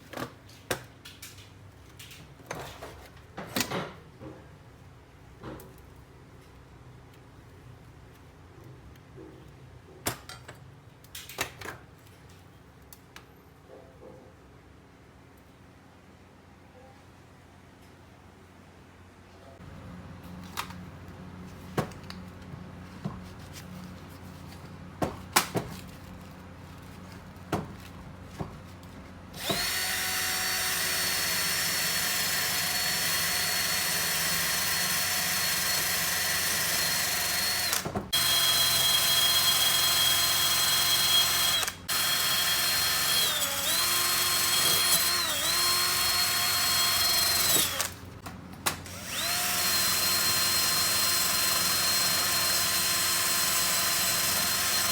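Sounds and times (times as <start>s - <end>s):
power tool whining: 29.4s - 48.0s, 48.8s - 54.9s.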